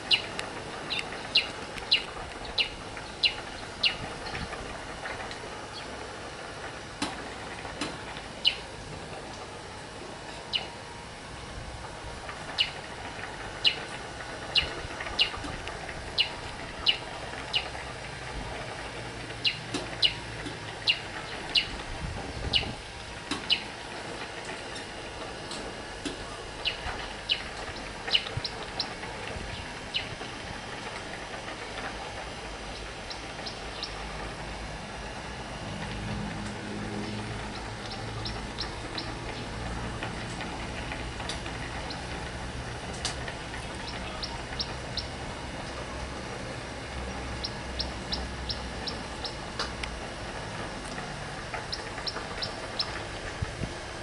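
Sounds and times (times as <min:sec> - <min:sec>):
steady background noise: 0:00.0 - 0:54.0
bird chirping: 0:00.9 - 0:04.4, 0:20.9 - 0:21.7, 0:28.1 - 0:28.9, 0:33.1 - 0:34.0, 0:43.8 - 0:45.1, 0:47.4 - 0:49.4.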